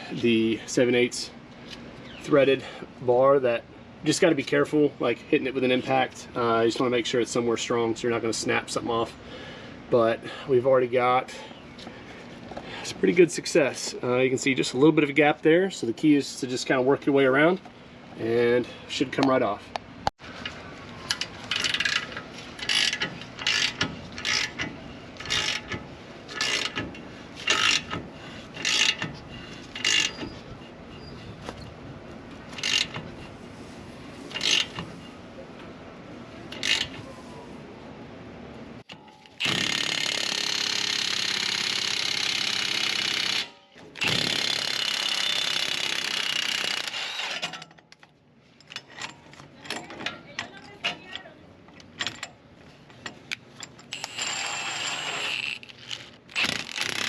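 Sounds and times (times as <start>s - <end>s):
impact wrench running: 21.5s - 30.2s, 32.6s - 33.0s, 39.4s - 47.6s, 53.9s - 57.0s.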